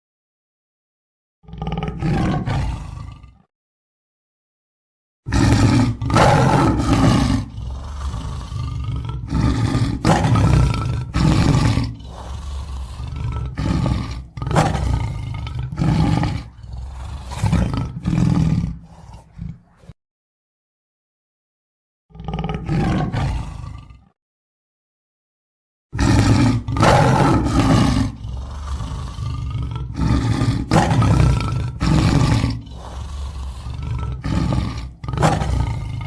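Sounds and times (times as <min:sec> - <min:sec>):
lion roaring: 0:01.4 - 0:03.5, 0:05.3 - 0:20.0, 0:22.1 - 0:24.2, 0:26.0 - 0:36.0.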